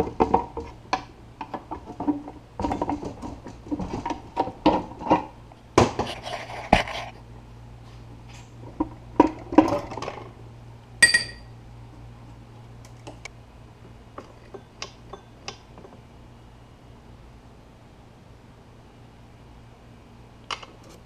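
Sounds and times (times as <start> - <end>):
steady low hum: 0.0 - 21.0
metal tools clinking: 11.0 - 11.5
ringing metallic clank: 11.0 - 11.5.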